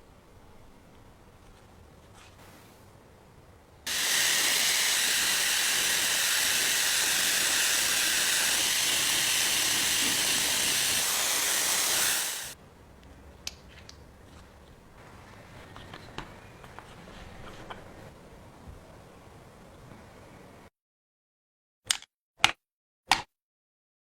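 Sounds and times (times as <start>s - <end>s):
aerosol spray can hissing: 3.9s - 12.6s.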